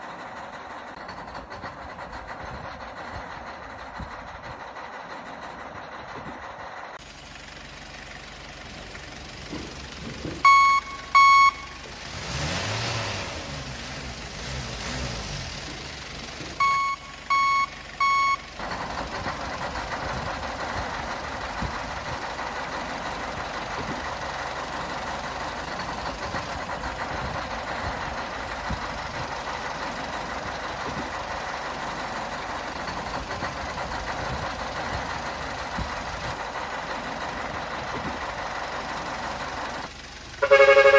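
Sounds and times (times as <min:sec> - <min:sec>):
electronic reversing beeps: 0:10.4 - 0:11.8, 0:16.6 - 0:18.4.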